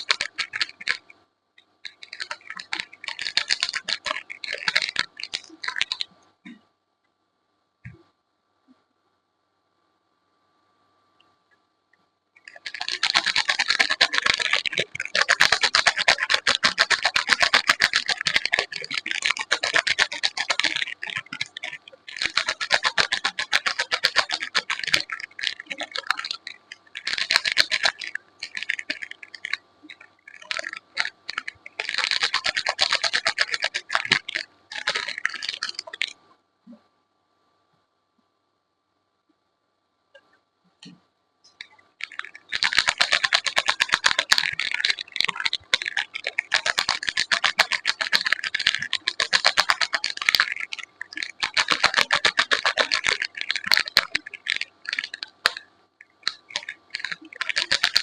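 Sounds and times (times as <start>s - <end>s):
soap wrapping crackling: 12.4s - 36.1s, 41.6s - 58.0s.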